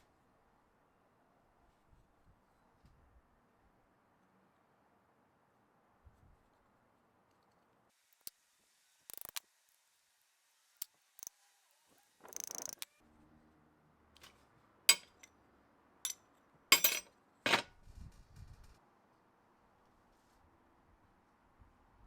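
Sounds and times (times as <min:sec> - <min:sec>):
metal parts clicking and clinking: 0:12.4 - 0:12.8, 0:14.9 - 0:15.3, 0:16.7 - 0:17.7.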